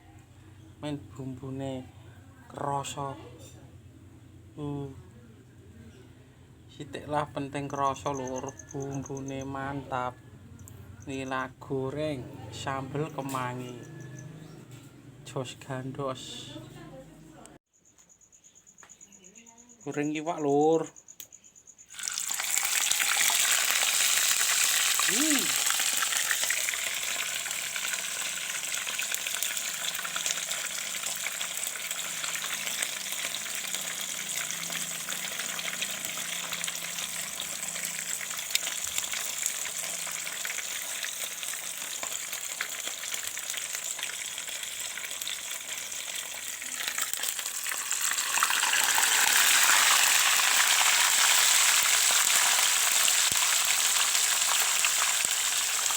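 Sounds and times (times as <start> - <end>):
fish sizzling in hot oil: 21.9 - 55.9.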